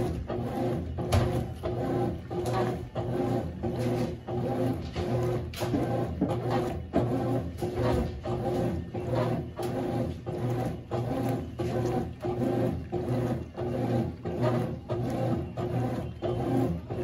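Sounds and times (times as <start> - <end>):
washing machine agitating: 0.0 - 17.0.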